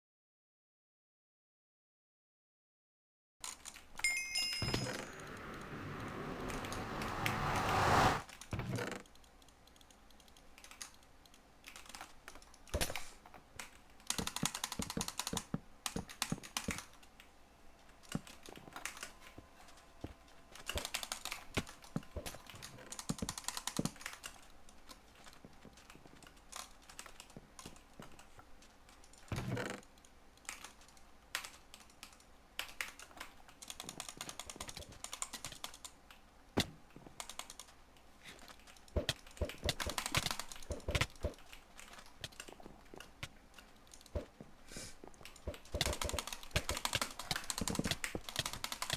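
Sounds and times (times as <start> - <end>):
rushing noise: 4.6 - 8.2
rapid small clicks and taps: 8.2 - 36.3, 36.9 - 48.9.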